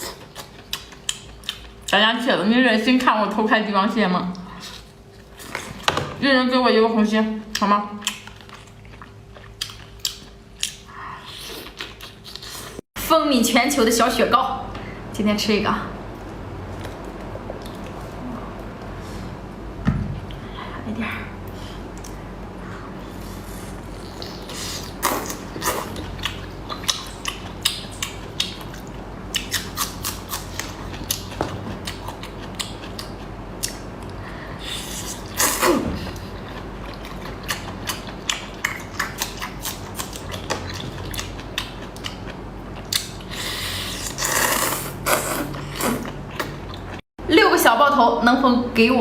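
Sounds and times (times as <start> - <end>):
crunchy chewing: 23.1 - 34.2, 34.8 - 47.0.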